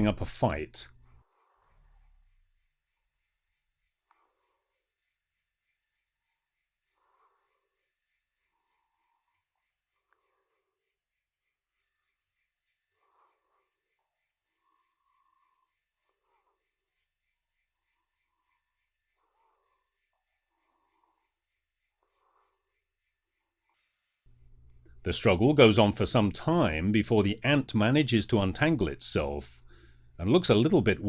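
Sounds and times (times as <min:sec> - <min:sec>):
night insect chirping: 0:01.1 - 0:25.1.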